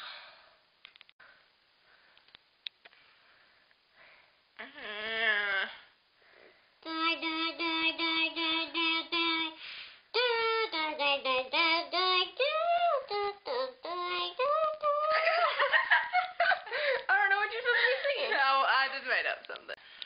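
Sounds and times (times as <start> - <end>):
high-pitched wordless singing: 6.8 - 15.5.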